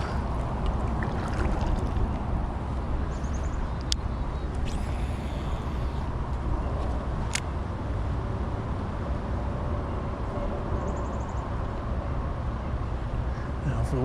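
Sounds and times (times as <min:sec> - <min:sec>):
wind buffeting microphone: 0:00.0 - 0:07.4.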